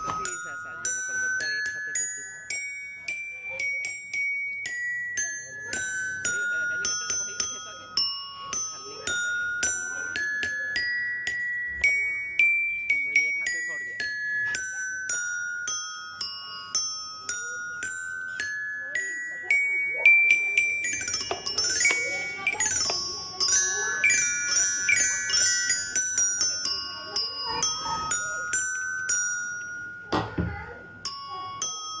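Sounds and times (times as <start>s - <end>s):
chiming bell-like melody: 0.0s - 32.0s
faint voices: 0.0s - 32.0s.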